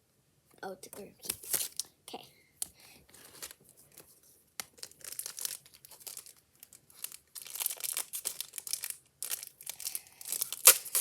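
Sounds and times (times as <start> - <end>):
foil wrapper crinkling: 1.3 - 1.9, 4.6 - 11.0.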